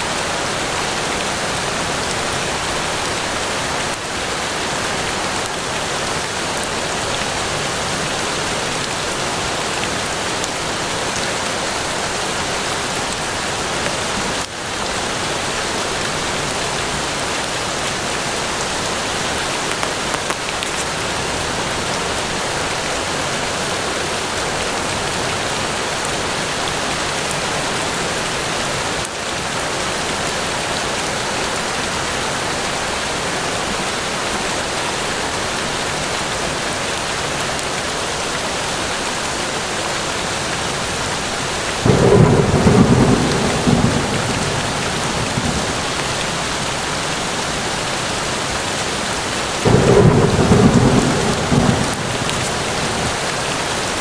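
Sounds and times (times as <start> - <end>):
steady rain on forest: 0.0 - 54.0
deep rolls of thunder: 41.8 - 46.9, 49.6 - 53.5.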